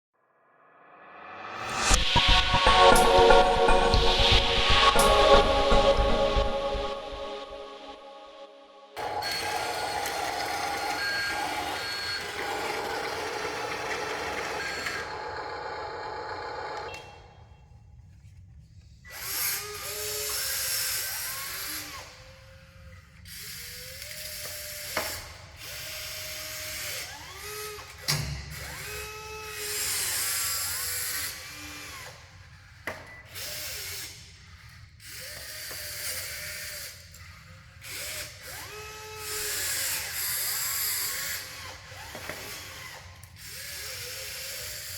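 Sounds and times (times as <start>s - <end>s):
small electric motors whining: 9.0s - 17.2s, 19.1s - 44.9s.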